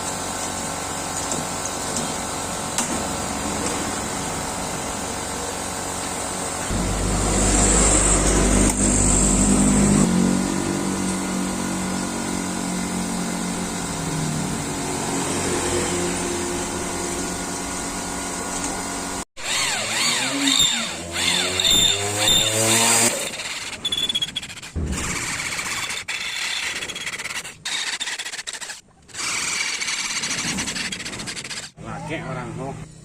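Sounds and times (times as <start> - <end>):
small motor revving: 6.5 - 31.8.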